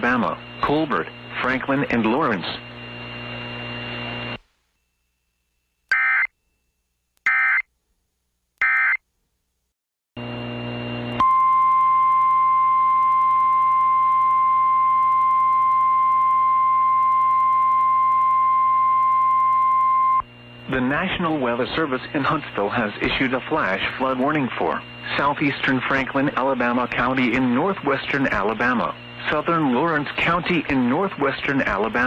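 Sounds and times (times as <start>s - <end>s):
radio hum and hiss: 0.0s - 4.8s, 19.1s - 32.0s
buzzing data bursts: 5.9s - 6.3s, 7.2s - 7.6s
steady alarm tone: 5.9s - 6.3s, 7.3s - 7.6s.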